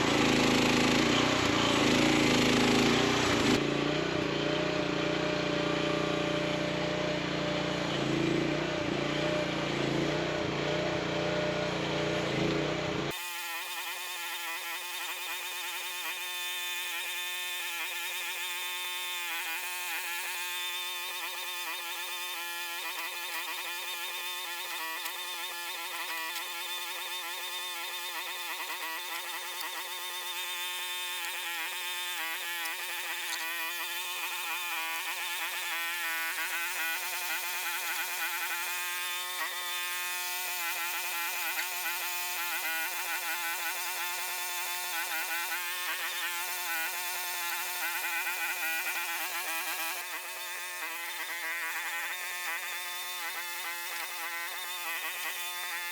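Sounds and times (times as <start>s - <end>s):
mini excavator engine droning: 0.0s - 55.9s.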